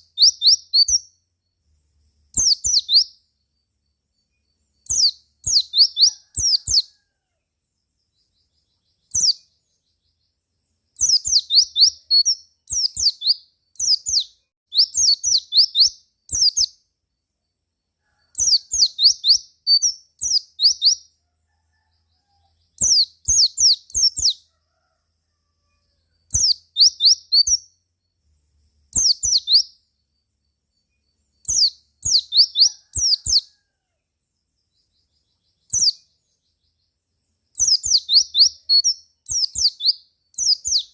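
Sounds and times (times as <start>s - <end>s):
bird chirping: 0.0s - 25.0s, 25.6s - 40.9s.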